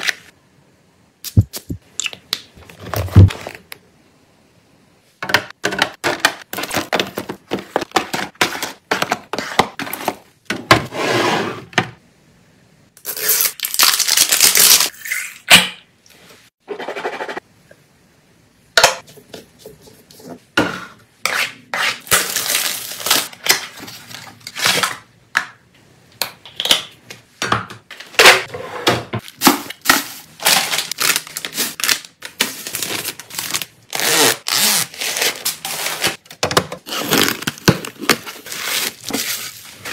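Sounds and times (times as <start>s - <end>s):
packaging being handled: 29.2s - 39.9s.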